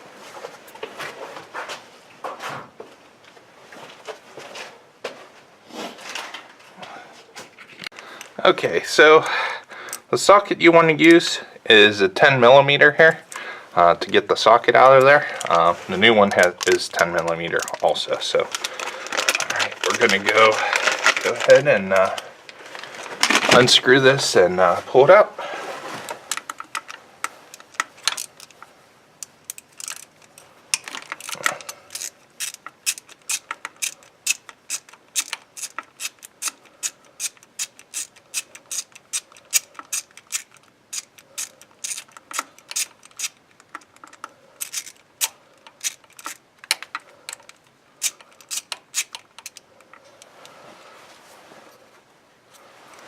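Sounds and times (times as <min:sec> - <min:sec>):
ratchet wrench clicking: 0:31.2 - 0:49.6.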